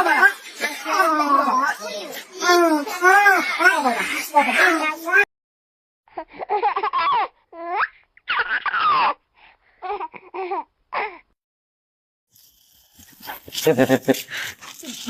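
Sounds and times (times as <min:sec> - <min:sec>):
baby laughing: 0:00.0 - 0:05.2, 0:06.2 - 0:09.2.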